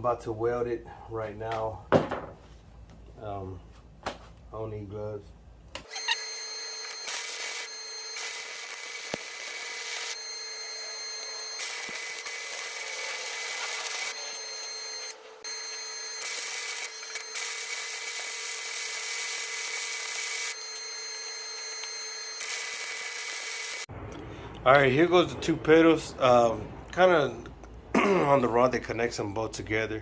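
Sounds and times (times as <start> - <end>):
welding arc crackling: 6.8 - 10.2, 11.5 - 15.0, 16.1 - 20.6, 22.3 - 23.9.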